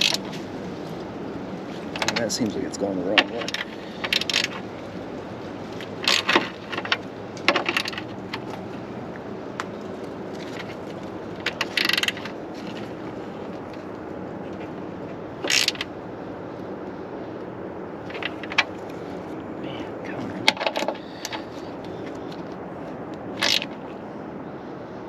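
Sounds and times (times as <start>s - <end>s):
ratchet clicking: 3.4s - 4.6s, 15.4s - 15.9s.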